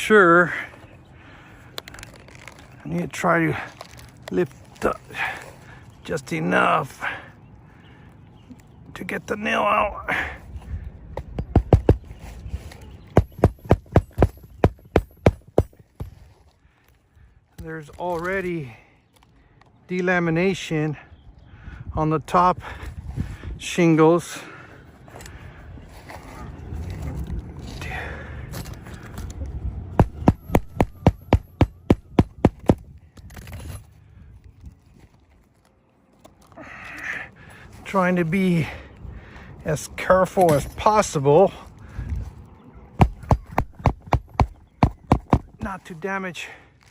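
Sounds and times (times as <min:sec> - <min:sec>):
hand tool knocking under shingle: 0:11.2 - 0:12.0, 0:13.1 - 0:16.2, 0:30.0 - 0:32.8, 0:43.0 - 0:45.6.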